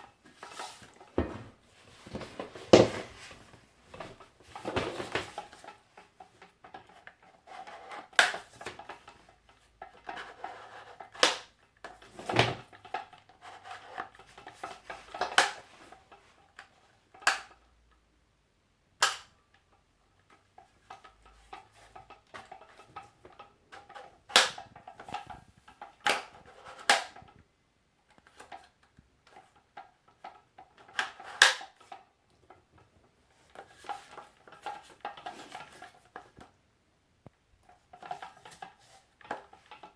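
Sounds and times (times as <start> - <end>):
rustling: 0.0 - 11.1
knocks and clicks of handling parts: 0.8 - 5.7.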